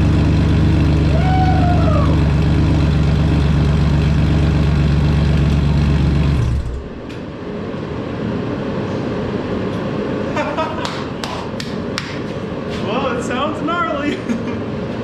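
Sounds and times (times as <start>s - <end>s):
car engine idling: 0.0s - 7.4s.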